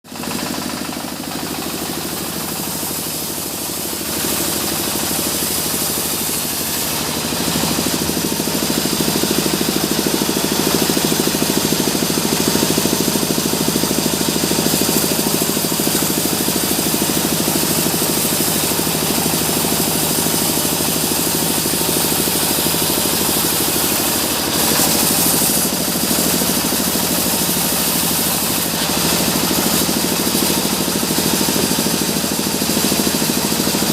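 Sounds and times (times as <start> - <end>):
sawmill timber saw running: 0.0 - 33.9.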